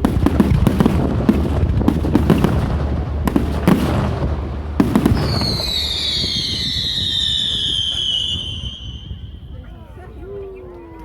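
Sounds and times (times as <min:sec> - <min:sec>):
fireworks bursting and crackling: 0:00.0 - 0:09.8
high falling whistle: 0:04.9 - 0:09.7.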